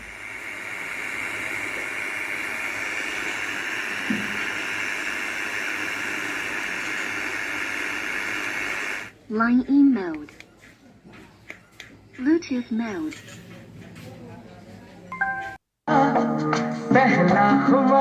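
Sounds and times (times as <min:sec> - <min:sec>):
loud static hiss from speaker: 0:00.0 - 0:10.2.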